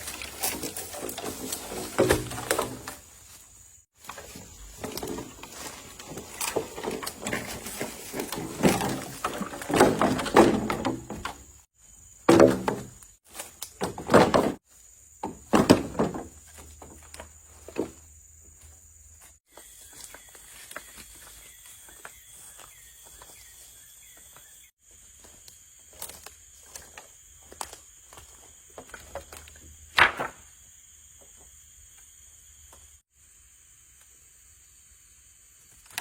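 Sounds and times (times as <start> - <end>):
wooden knocks and thunks: 0.0 - 3.1, 4.0 - 11.6, 12.2 - 14.6, 15.2 - 18.1.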